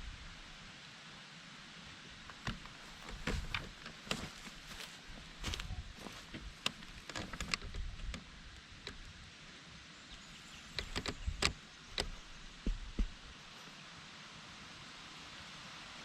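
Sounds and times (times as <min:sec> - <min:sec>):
steady hiss: 0:00.0 - 0:16.0
sharp clicks and knocks: 0:02.3 - 0:09.1, 0:10.7 - 0:13.4.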